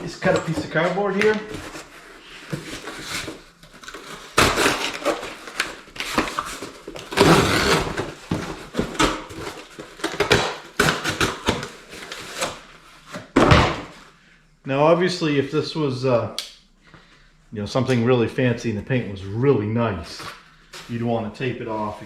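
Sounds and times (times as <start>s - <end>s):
cardboard scraping and crackling: 0.0s - 13.7s.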